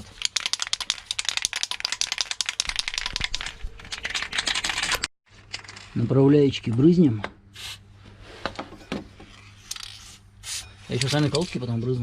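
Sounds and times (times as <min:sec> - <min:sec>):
spray can ball rattling: 0:00.0 - 0:04.1.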